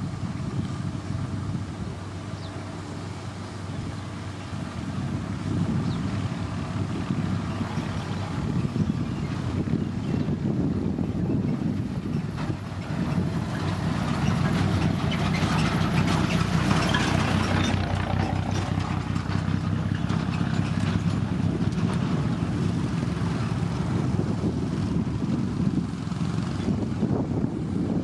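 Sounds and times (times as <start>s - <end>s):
diesel engine running: 0.0s - 28.0s
gritty grinding noise: 12.4s - 21.2s.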